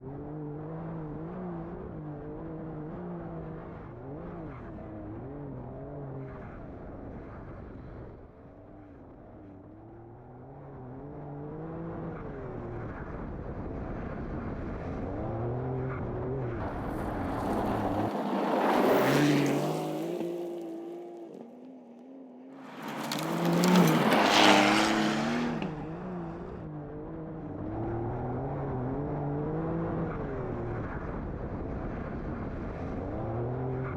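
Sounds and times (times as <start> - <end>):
car engine revving: 13.6 - 33.9.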